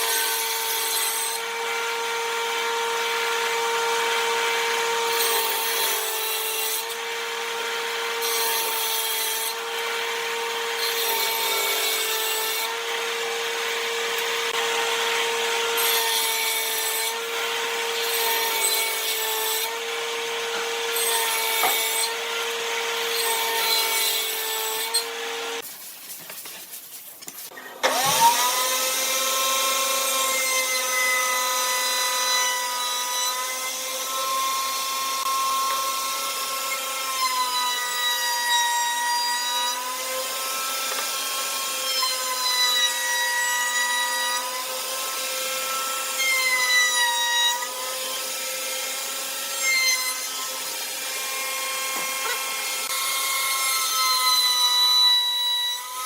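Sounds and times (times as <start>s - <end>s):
power tool motor whine: 9.5s - 24.4s, 27.7s - 31.9s.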